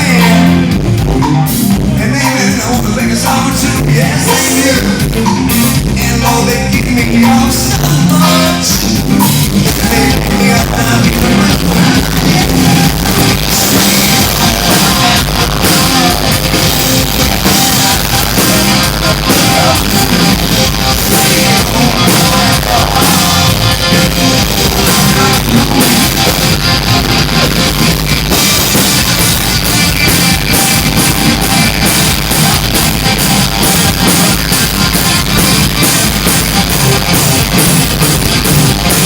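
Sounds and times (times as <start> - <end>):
person singing: 0.0 - 27.7
drum kit: 0.0 - 39.0
electric guitar: 0.0 - 39.0
live rock band playing: 0.0 - 39.0.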